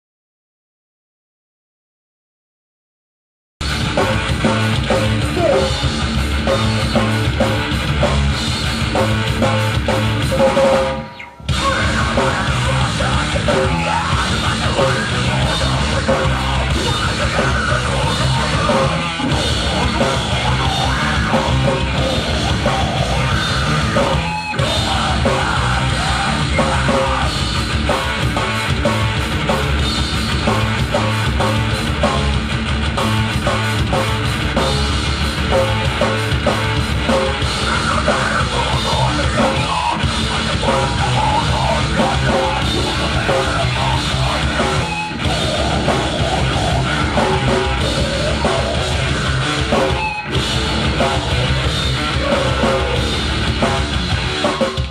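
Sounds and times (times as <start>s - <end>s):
drum kit: 3.6s - 54.9s
guitars: 3.6s - 54.9s
loud metal band playing: 3.6s - 54.9s.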